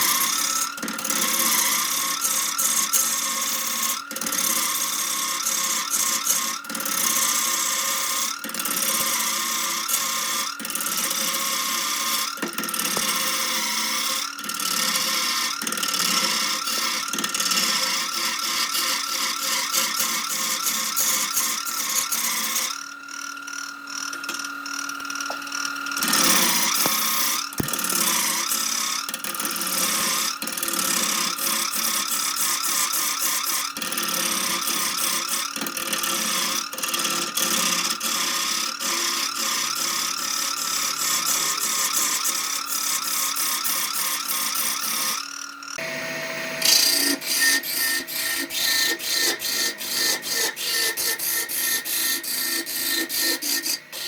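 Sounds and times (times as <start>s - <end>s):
turning tool cutting wood: 0.0s - 54.0s
wood lathe motor whine: 0.0s - 54.0s.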